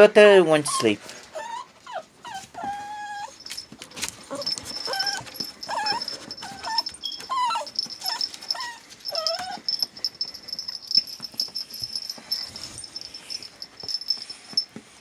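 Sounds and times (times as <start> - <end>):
dog whimpering: 0.6 - 10.2.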